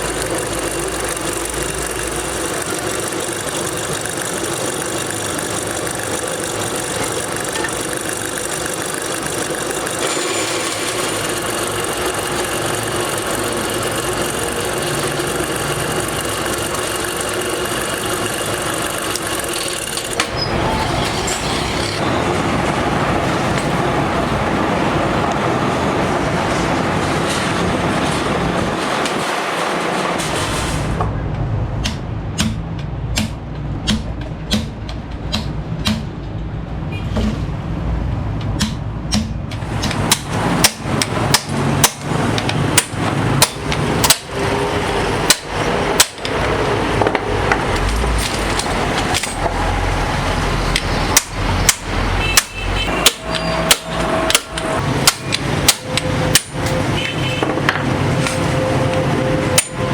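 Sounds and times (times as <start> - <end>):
steady background noise: 0.0 - 59.9
hammer striking metal: 6.6 - 13.8, 31.8 - 36.3, 38.4 - 49.6, 50.7 - 58.7.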